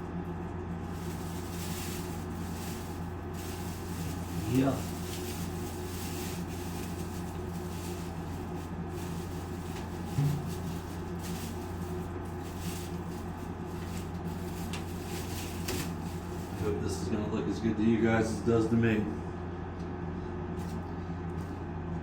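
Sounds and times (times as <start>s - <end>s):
low room hum: 0.0s - 22.0s
faint rustling: 0.8s - 16.7s.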